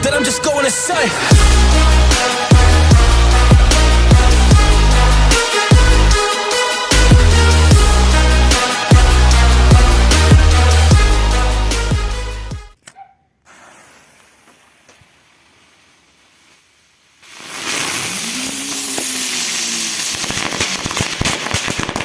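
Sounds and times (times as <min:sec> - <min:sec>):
firework hissing and crackling: 0:01.1 - 0:09.6, 0:13.5 - 0:22.0.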